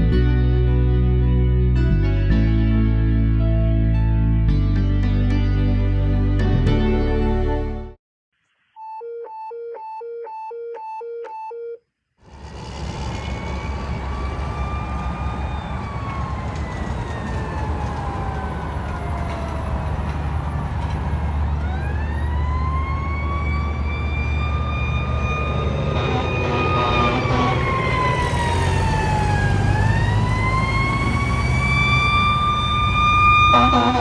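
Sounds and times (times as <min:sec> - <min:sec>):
two-pitch electronic beeping: 0:08.8 - 0:11.8
fire truck engine running: 0:12.2 - 0:34.0.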